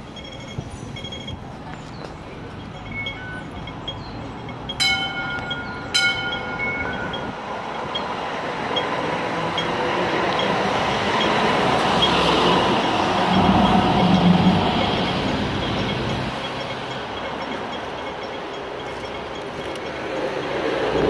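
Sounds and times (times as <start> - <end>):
train running noise: 0.0 - 21.0
bell-like warning gong: 4.7 - 8.1.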